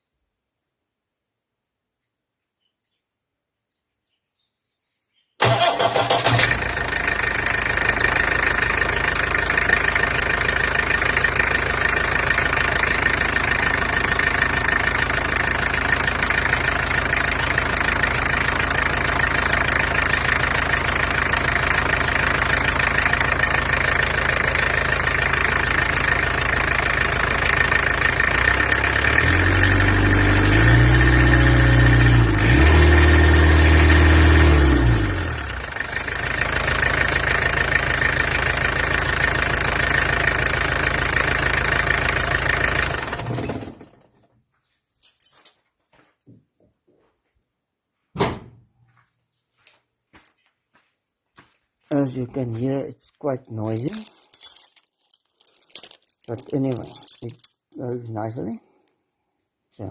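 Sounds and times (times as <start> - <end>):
diesel engine revving: 5.4 - 44.0
diesel engine idling with clatter: 5.4 - 44.4.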